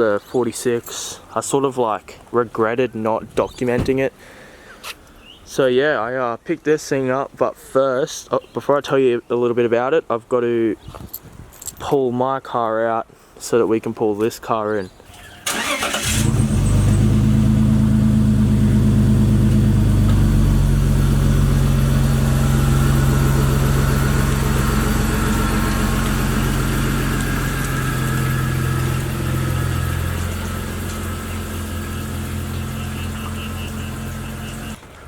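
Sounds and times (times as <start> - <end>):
car engine idling: 15.1 - 34.8.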